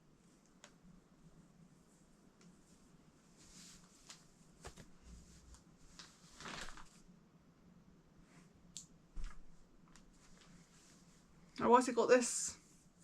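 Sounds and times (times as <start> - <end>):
parcel rustling: 1.8 - 7.1.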